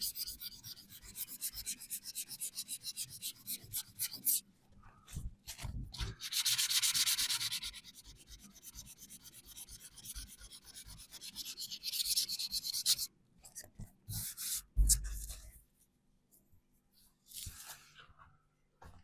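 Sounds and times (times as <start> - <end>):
hand sanding strokes: 6.2 - 13.1.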